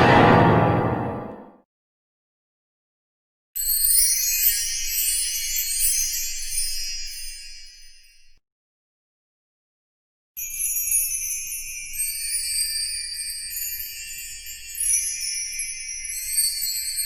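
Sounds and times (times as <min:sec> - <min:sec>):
sleigh bells jingling: 0:10.4 - 0:17.0.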